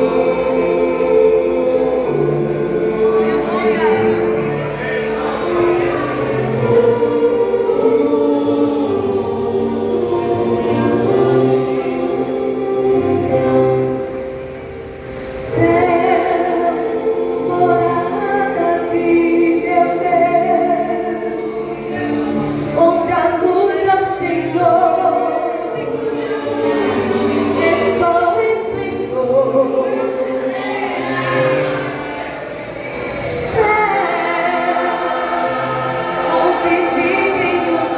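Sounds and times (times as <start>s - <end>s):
gospel group singing in harmony: 0.0s - 37.9s
low musical accompaniment: 0.0s - 37.9s.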